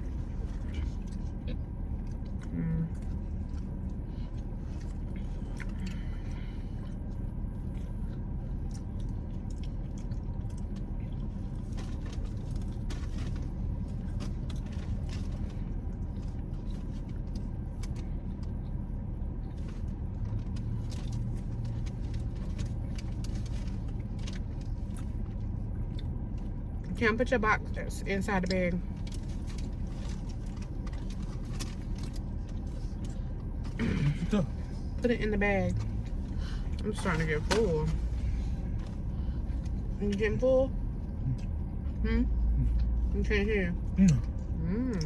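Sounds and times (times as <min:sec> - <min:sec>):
car interior rumble: 0:00.0 - 0:45.0
small clicks and rustles: 0:19.5 - 0:26.6.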